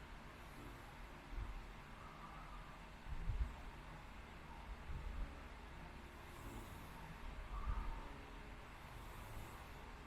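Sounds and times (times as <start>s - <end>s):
low snore: 8.8s - 9.9s
person breathing in sleep: 8.9s - 9.9s.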